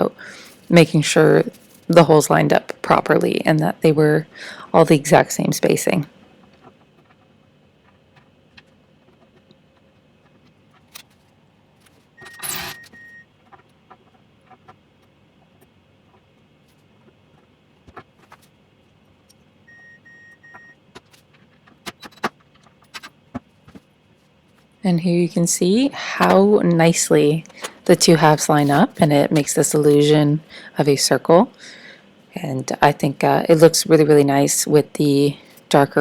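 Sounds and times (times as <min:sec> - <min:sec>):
hands handling hardware and wood: 0:06.4 - 0:19.5, 0:20.4 - 0:24.8, 0:27.3 - 0:30.2
short electronic beeps: 0:12.2 - 0:13.2, 0:19.7 - 0:20.8.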